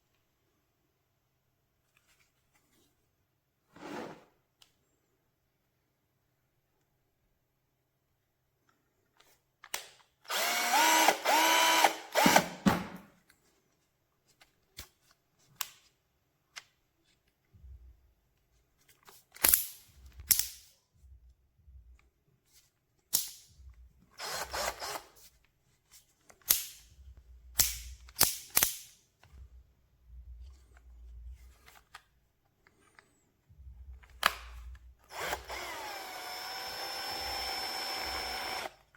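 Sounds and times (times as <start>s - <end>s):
cordless drill motor spinning: 10.3s - 12.6s, 24.2s - 25.1s, 35.0s - 38.9s.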